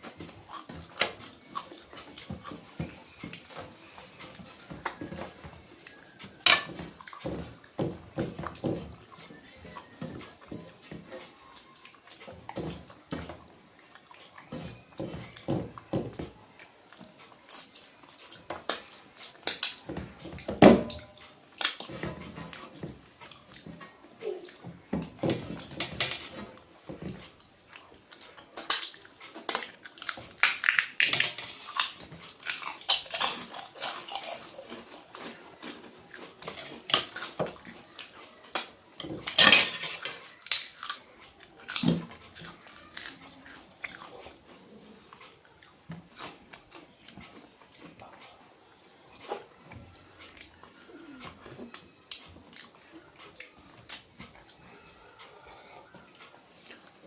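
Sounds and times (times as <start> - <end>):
chewing and crunching: 0.0 - 57.0
cutlery clinking on a plate: 0.6 - 7.5, 38.5 - 41.0.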